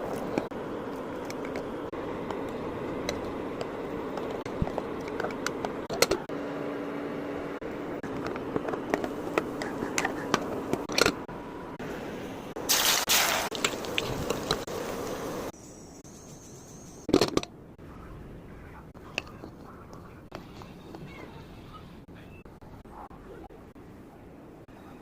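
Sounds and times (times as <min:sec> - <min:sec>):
kitchen background hiss: 0:11.8 - 0:17.1.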